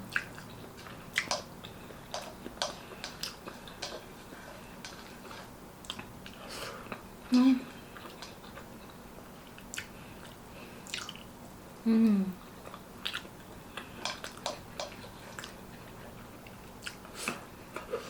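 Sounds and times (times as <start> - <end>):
person chewing with wet smacks: 0.0 - 11.4, 12.4 - 18.0
person humming mm: 7.3 - 7.7, 11.8 - 12.4.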